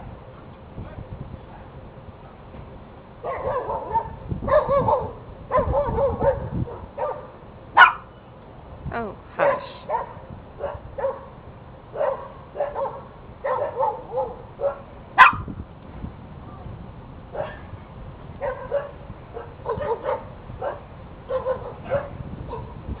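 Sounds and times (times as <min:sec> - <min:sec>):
dog barking: 0:03.2 - 0:08.1, 0:09.4 - 0:11.3, 0:12.0 - 0:15.5, 0:17.4 - 0:17.7, 0:18.4 - 0:22.7.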